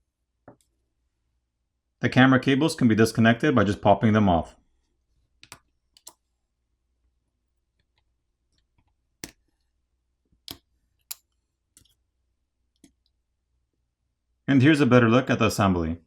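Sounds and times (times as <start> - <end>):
small tool clicks and taps: 5.4 - 6.2, 9.2 - 9.4, 10.5 - 12.0.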